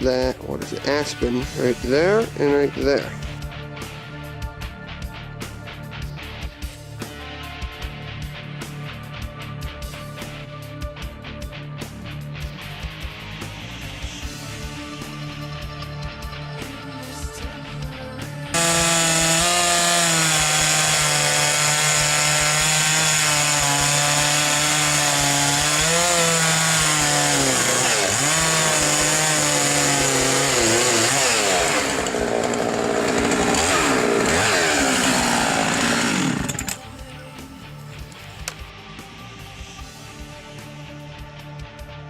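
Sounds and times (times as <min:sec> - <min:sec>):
chainsaw cutting through log: 0:00.0 - 0:03.4, 0:18.5 - 0:37.0.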